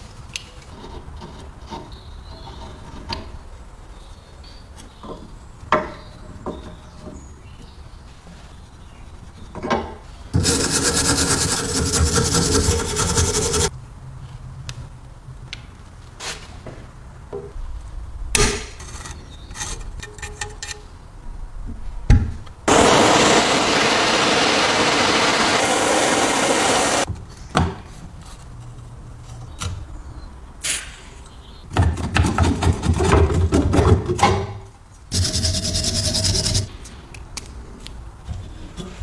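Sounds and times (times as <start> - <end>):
loud steady rasping: 10.4 - 13.7, 22.7 - 27.1, 35.1 - 36.7
clicks and knocks of tools: 18.6 - 20.9.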